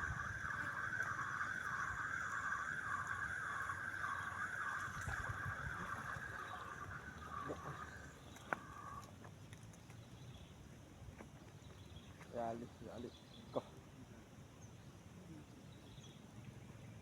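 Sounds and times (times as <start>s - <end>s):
insect buzzing: 0.0s - 9.0s
low outdoor rumble: 0.0s - 10.5s.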